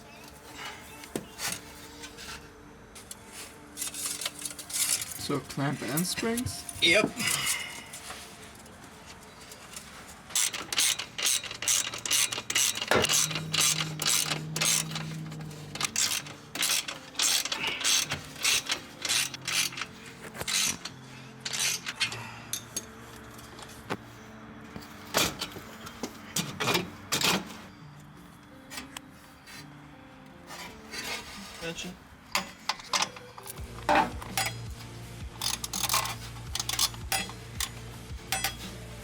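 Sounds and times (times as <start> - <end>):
ratchet wrench clicking: 10.3 - 15.2, 15.8 - 20.9, 32.7 - 38.8.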